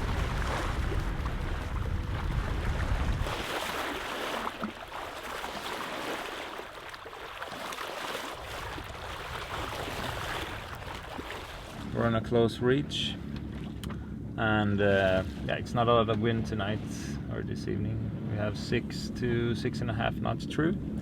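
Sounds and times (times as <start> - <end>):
wind buffeting microphone: 0.0 - 6.0, 8.3 - 19.9
water rushing past hull: 0.0 - 21.0.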